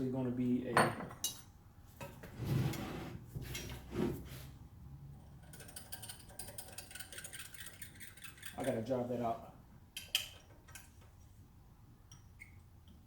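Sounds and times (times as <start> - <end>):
metal scraping slide: 2.4 - 4.5.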